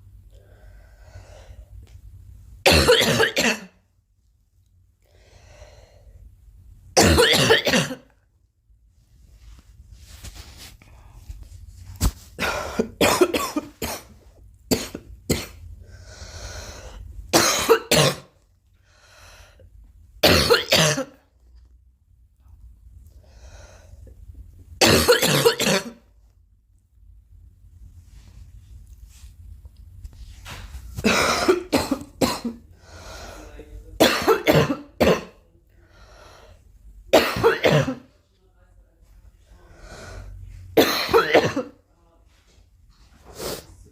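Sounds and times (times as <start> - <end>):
girl breathing: 0.3 - 1.8, 5.0 - 6.4, 15.8 - 17.2, 18.8 - 19.7, 23.2 - 24.1, 32.8 - 33.6, 35.8 - 36.8, 39.6 - 40.6
girl coughing: 2.6 - 3.8, 7.0 - 8.1, 12.4 - 15.6, 17.3 - 18.3, 20.2 - 21.2, 24.8 - 26.0, 31.0 - 32.6, 34.0 - 35.4, 37.1 - 38.1, 40.8 - 41.8.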